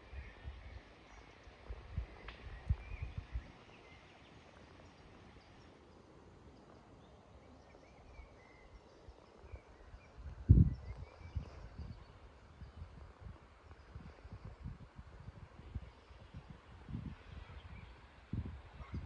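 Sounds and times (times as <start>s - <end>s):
faint bird chirps: 0.0s - 12.8s.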